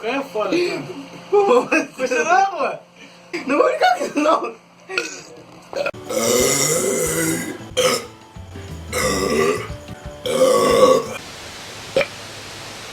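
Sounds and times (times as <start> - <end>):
person burping loudly: 5.9 - 8.2, 8.9 - 11.2.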